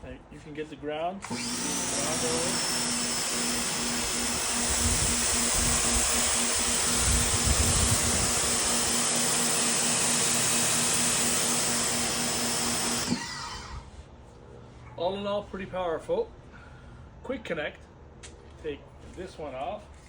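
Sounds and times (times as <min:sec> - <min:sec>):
pressure washer motor hum: 0:01.2 - 0:13.9.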